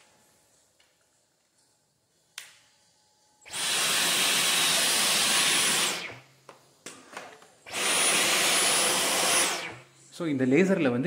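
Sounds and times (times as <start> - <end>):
vacuum cleaner motor whine: 3.4 - 6.3, 7.7 - 10.0.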